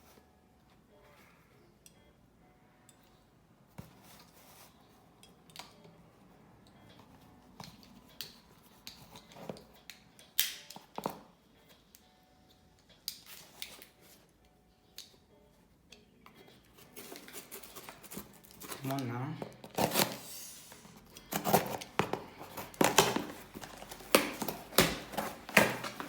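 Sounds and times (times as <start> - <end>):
cardboard box being opened: 19.7 - 26.0.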